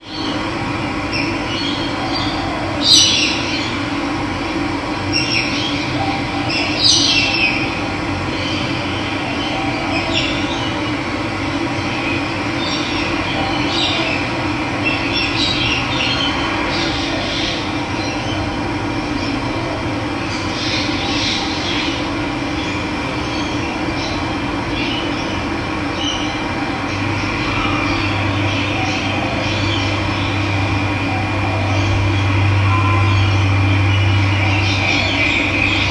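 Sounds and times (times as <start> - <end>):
birds chirping and calling: 1.1 - 3.8, 5.1 - 7.7, 24.8 - 35.9.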